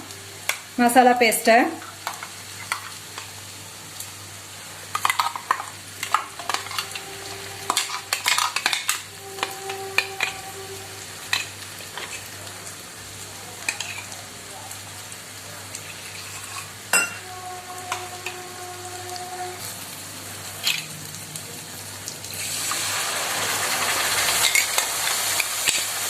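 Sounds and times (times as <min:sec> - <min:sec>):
steady frying sizzle: 0:00.0 - 0:26.0
spoon scraping and knocking in pan: 0:04.9 - 0:10.5.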